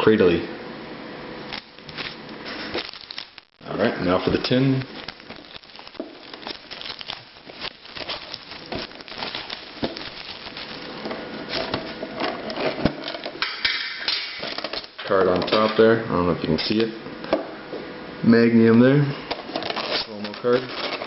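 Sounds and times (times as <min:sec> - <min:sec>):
plastic wrapping crinkling: 0:01.5 - 0:13.4, 0:14.3 - 0:15.0, 0:19.4 - 0:21.0.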